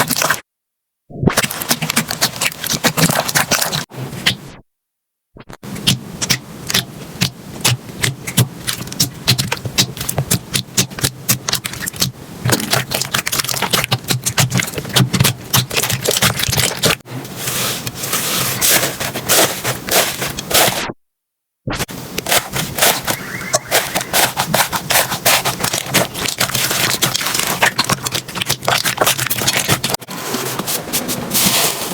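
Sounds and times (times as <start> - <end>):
slime squishing: 0.0 - 0.4, 1.3 - 4.5, 5.8 - 20.9, 22.2 - 31.9
slime crackling and popping: 5.8 - 17.0, 22.2 - 30.0.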